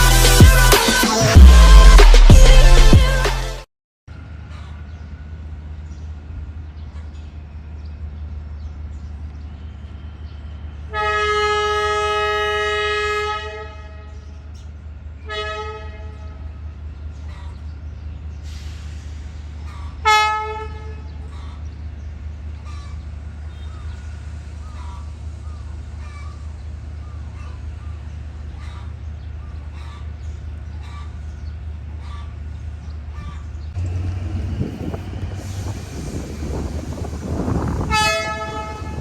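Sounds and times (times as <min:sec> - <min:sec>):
diesel locomotive rumble: 0:04.1 - 0:39.0
train horn blasts: 0:10.8 - 0:14.4, 0:15.2 - 0:16.5, 0:20.0 - 0:21.2, 0:33.8 - 0:39.0.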